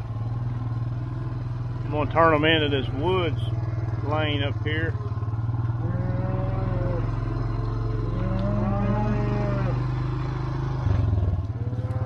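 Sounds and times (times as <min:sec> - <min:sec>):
engine humming: 0:00.0 - 0:12.0
cattle mooing: 0:05.6 - 0:12.0.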